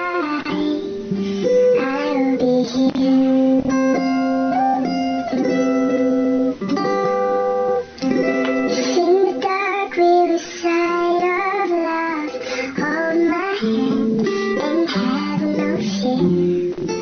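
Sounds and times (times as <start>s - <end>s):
person singing: 0.0s - 4.9s, 8.5s - 16.7s
plucked guitar music: 0.0s - 17.0s.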